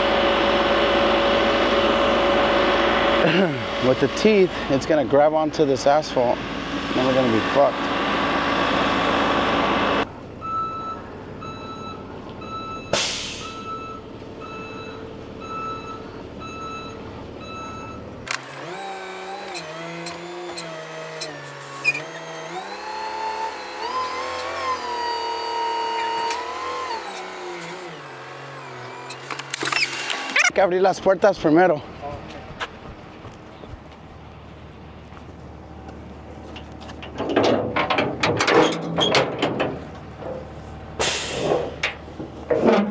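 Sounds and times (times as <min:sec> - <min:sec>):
diesel engine revving: 0:00.0 - 0:30.6
truck backup alarm beeping: 0:07.8 - 0:18.3, 0:23.8 - 0:29.1
air brake hiss: 0:13.0 - 0:13.7, 0:41.0 - 0:41.6.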